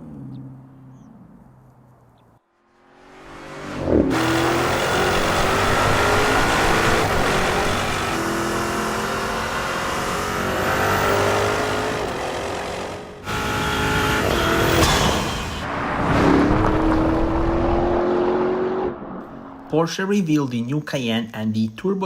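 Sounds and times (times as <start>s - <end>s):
car engine accelerating hard: 2.8s - 19.7s.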